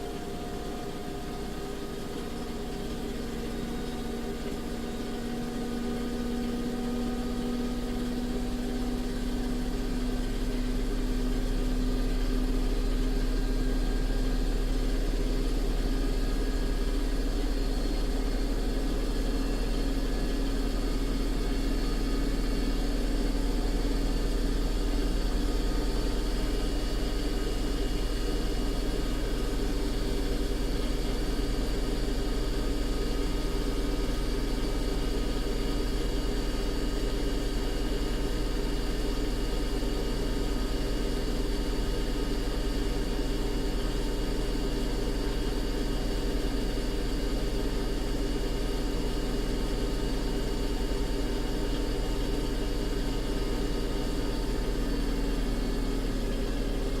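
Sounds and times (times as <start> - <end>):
washing machine spinning: 0.0 - 57.0.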